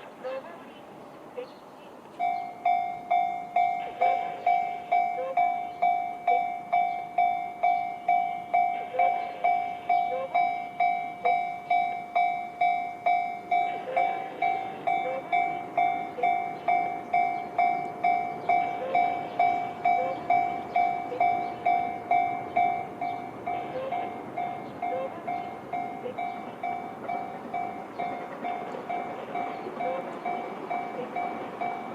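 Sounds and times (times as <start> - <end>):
electric train rumble: 0.0 - 31.9
level crossing warning bell: 2.1 - 31.9.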